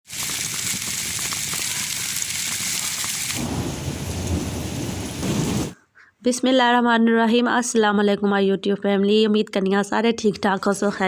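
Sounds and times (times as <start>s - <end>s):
heavy rain pouring: 0.0s - 5.8s.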